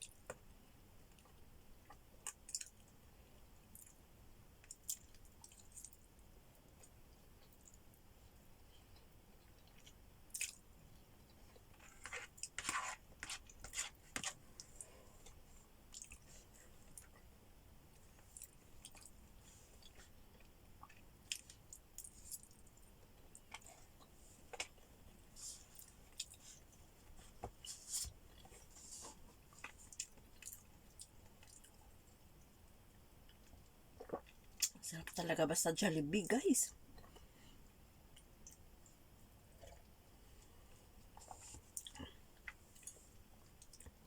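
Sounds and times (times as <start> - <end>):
close-up chewing: 8.7 - 17.3, 17.9 - 32.5.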